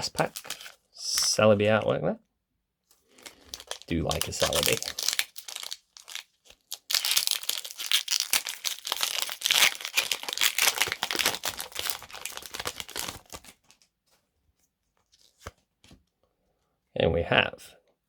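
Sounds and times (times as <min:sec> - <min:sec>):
wrapper tearing and crinkling: 0:00.0 - 0:00.8, 0:03.0 - 0:13.8.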